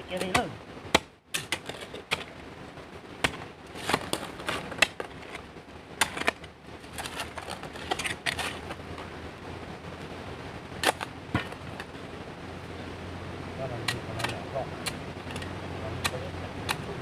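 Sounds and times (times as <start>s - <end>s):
sharp knocks of hard objects: 0.2s - 2.3s.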